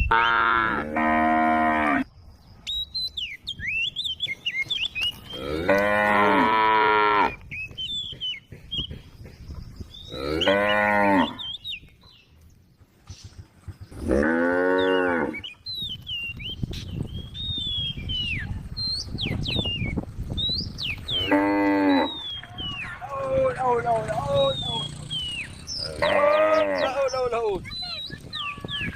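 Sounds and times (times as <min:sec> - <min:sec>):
cow mooing: 0:00.0 - 0:02.1, 0:05.4 - 0:07.4, 0:10.1 - 0:11.4, 0:14.0 - 0:15.4, 0:21.2 - 0:22.2, 0:25.8 - 0:27.0.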